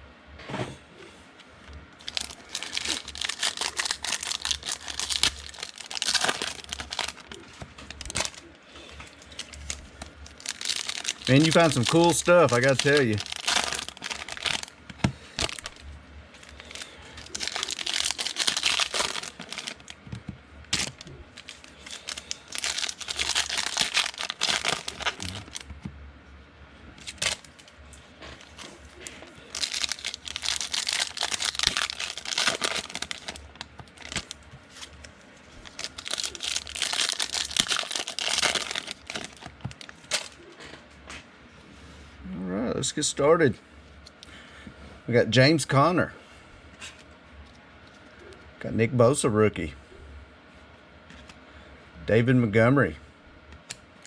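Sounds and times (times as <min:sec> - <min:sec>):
card pack wrappers crinkling: 0:02.0 - 0:15.8, 0:16.4 - 0:25.8, 0:27.0 - 0:27.8, 0:28.4 - 0:40.4.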